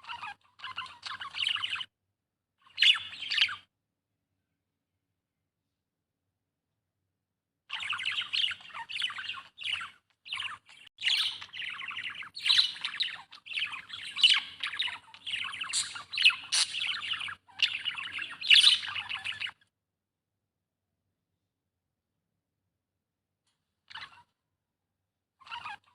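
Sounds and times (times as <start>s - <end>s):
budgerigar chattering: 7.8s - 19.6s.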